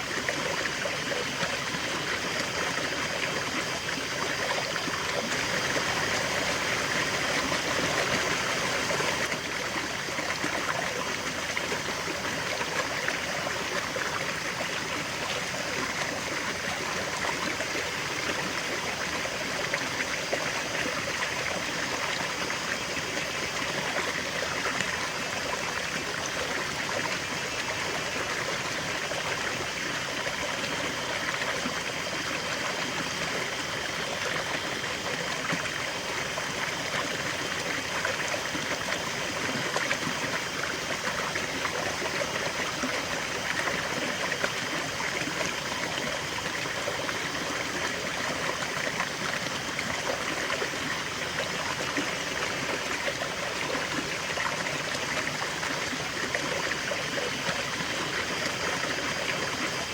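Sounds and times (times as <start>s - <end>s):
river flowing over stones: 0.0s - 59.9s.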